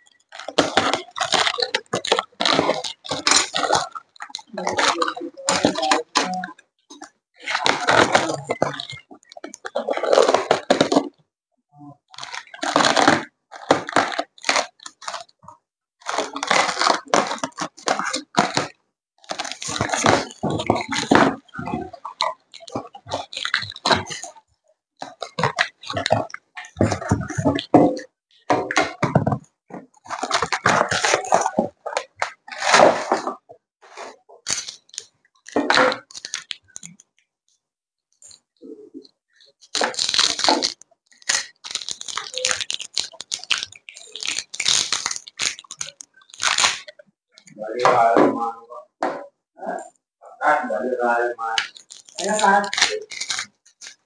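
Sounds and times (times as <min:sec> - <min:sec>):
packaging tearing and crinkling: 0:00.3 - 0:06.4, 0:12.1 - 0:15.3, 0:16.0 - 0:24.3, 0:30.0 - 0:33.3, 0:34.0 - 0:37.0, 0:39.7 - 0:46.9, 0:51.6 - 0:54.0.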